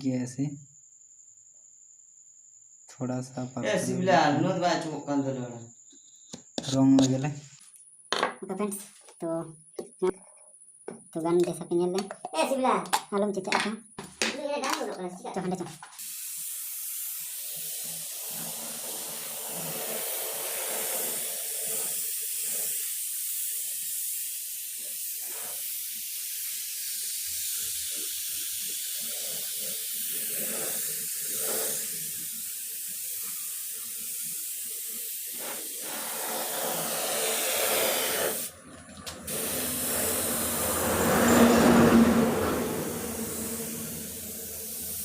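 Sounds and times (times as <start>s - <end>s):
spray gun hissing: 15.9s - 38.5s, 39.3s - 45.0s.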